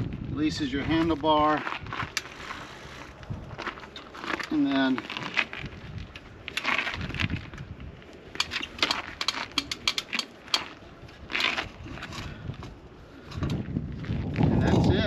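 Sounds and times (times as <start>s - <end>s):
scraping rustle: 0.0s - 15.0s
metal latches clicking and clanking: 8.3s - 10.8s.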